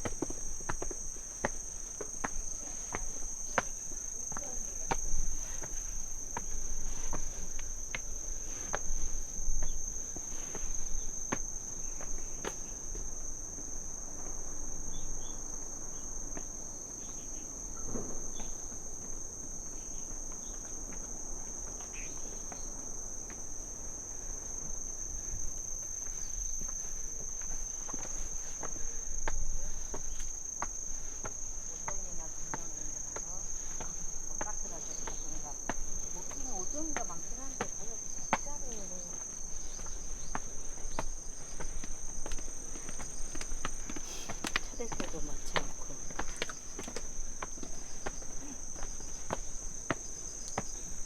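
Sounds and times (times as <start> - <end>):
footsteps on path: 0.0 - 13.7, 24.6 - 51.0
crickets chirping: 0.0 - 51.0.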